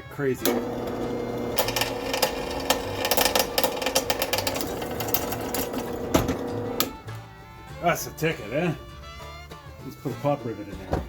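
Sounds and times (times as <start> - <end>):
drill bit clicking and chattering: 0.4 - 7.0
electric drill whining: 0.4 - 7.0.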